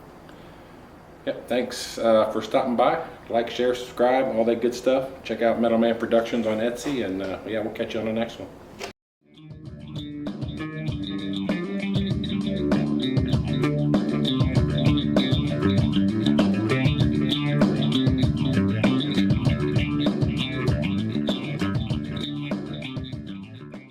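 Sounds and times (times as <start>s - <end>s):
rock instrumental with guitars: 9.4s - 23.9s.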